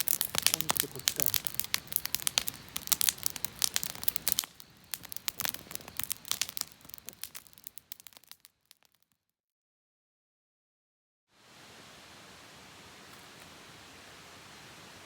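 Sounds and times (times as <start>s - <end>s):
dense crackling and popping: 0.0s - 9.2s.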